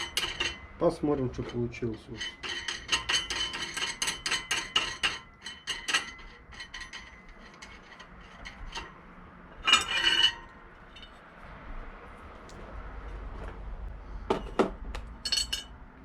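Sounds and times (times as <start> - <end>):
metal tools clinking: 1.3 - 9.0, 15.2 - 15.7
metallic clatter: 1.3 - 11.3, 14.4 - 15.8.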